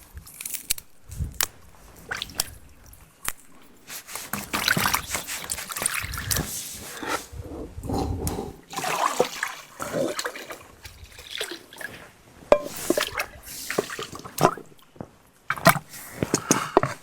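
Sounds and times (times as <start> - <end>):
water sloshing and splashing: 1.9 - 3.0, 4.0 - 7.4, 8.6 - 17.0.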